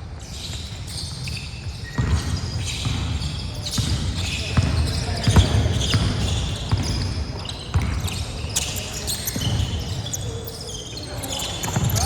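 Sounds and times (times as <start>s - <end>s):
sneaker squeaks on floor: 0.0s - 12.0s
basketball bouncing: 2.0s - 7.0s, 11.6s - 12.0s.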